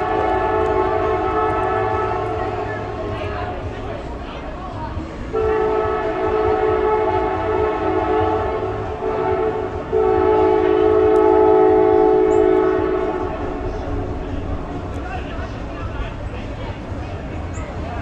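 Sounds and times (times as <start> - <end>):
loud horn blasts: 0.0 - 3.0, 5.3 - 13.8.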